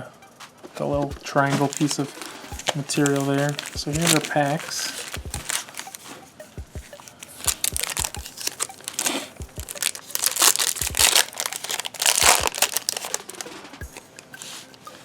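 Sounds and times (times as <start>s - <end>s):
wrapper tearing and crinkling: 1.4s - 6.0s, 7.3s - 13.7s.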